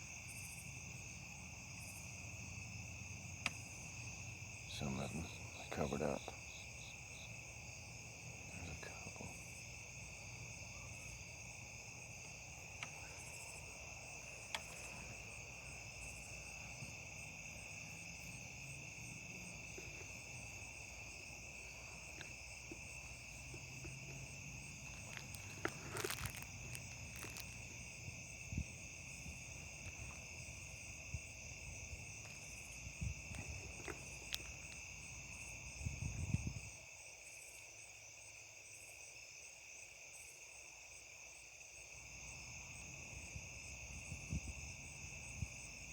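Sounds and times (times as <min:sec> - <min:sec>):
crickets and insects trilling: 0:00.0 - 0:45.9
clicks and rustles: 0:21.7 - 0:27.8, 0:33.2 - 0:34.9.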